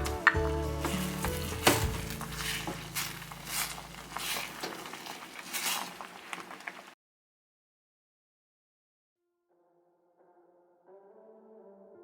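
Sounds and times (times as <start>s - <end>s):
scraping stirring strokes: 0.0s - 7.0s
food sizzling in a pan: 0.2s - 7.0s.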